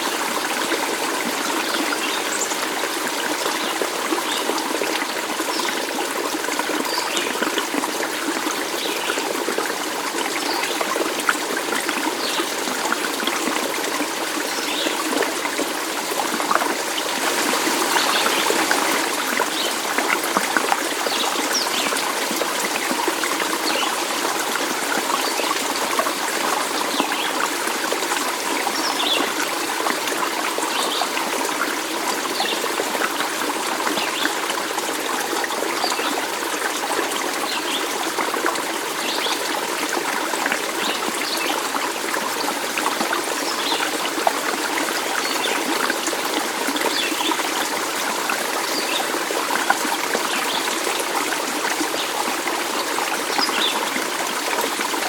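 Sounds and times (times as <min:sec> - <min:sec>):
stream burbling: 0:00.0 - 0:55.0.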